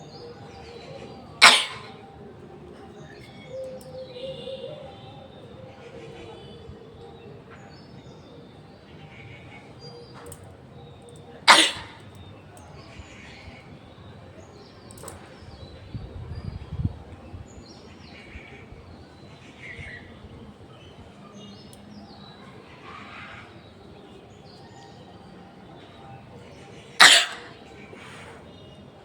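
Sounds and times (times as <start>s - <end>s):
person sneezing: 1.4s - 1.9s, 11.5s - 12.0s, 27.0s - 27.5s.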